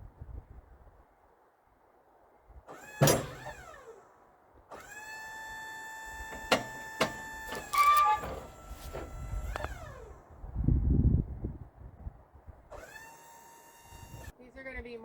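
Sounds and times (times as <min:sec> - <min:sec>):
electric motor whining: 0:04.8 - 0:10.2.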